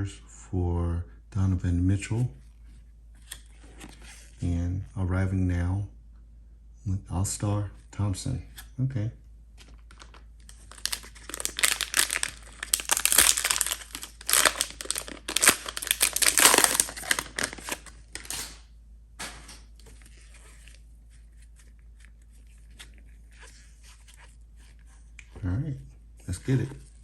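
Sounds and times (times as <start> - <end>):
wrapper crinkling: 9.6 - 18.6.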